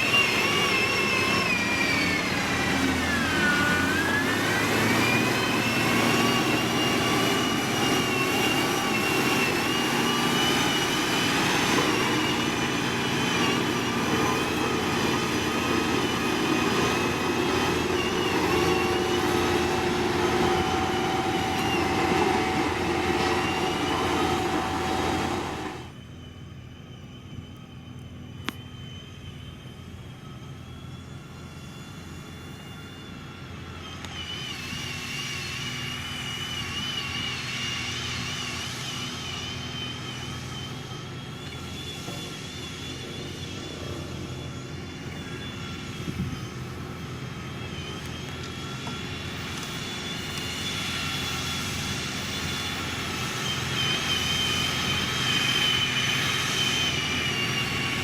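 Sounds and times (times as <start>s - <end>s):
loud machine sound: 0.0s - 26.1s, 30.0s - 58.0s
high wavering whine: 0.0s - 58.0s
diesel engine running: 1.3s - 26.0s, 52.2s - 58.0s.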